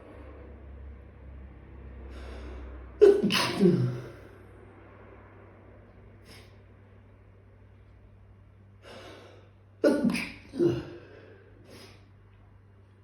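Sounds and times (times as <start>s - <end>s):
person sneezing: 3.0s - 4.2s, 9.8s - 12.0s.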